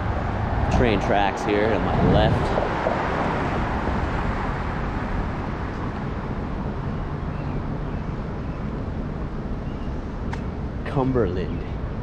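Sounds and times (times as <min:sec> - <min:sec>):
wind on microphone: 0:00.0 - 0:10.8
road traffic rumble: 0:00.0 - 0:12.0.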